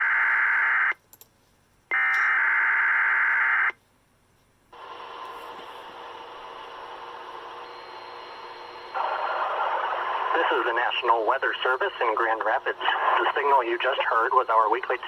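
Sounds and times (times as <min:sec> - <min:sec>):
radio hiss: 0:04.8 - 0:15.0.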